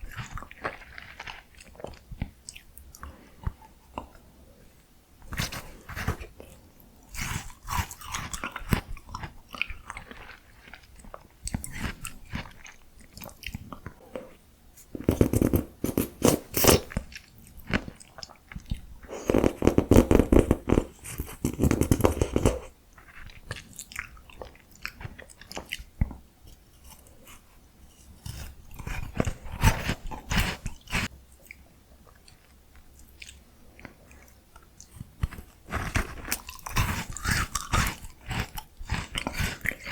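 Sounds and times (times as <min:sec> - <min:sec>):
chewing ice cream: 0:00.0 - 0:04.3, 0:05.3 - 0:14.3, 0:15.9 - 0:20.0, 0:20.6 - 0:27.4, 0:28.0 - 0:39.9
crunching: 0:34.8 - 0:39.9.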